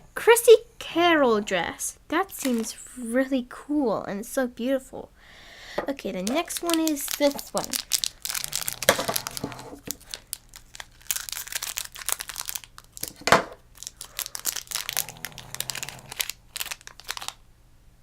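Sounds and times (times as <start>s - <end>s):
plastic packaging crinkling and tearing: 2.3s - 2.7s, 6.0s - 17.4s.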